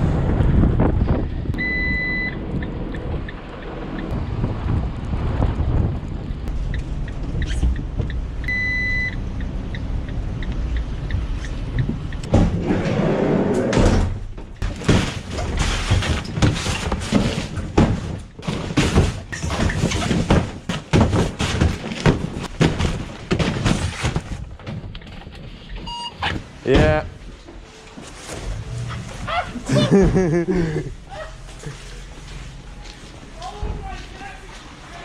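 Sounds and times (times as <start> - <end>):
low rumble: 0.0 - 14.6
short electronic beep: 8.5 - 9.2
irregular knocks and thuds: 11.1 - 12.8, 13.7 - 25.6.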